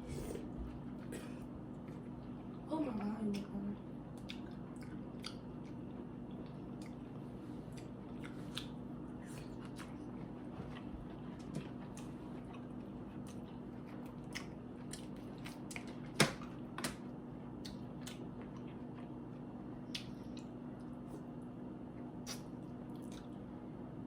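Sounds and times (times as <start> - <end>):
steady low hum: 0.0 - 24.0
wet chewing and sucking: 4.1 - 16.0, 22.2 - 23.4.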